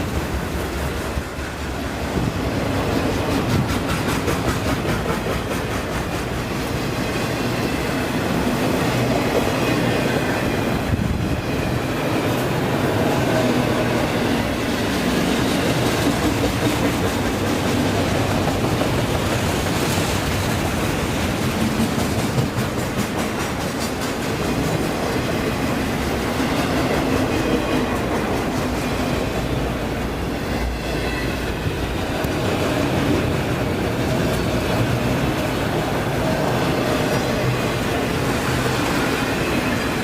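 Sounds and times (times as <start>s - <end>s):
freight train rolling past: 0.0s - 40.0s
wheels clicking over rail joints: 0.1s - 7.8s, 13.9s - 29.6s.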